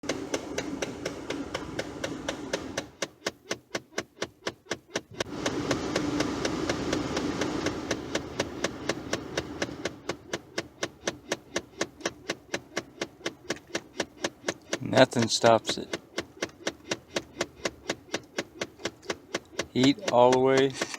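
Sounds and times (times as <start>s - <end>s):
blower air rushing: 0.0s - 3.0s, 5.2s - 10.2s
rapid clicking behind dashboard: 0.0s - 20.9s.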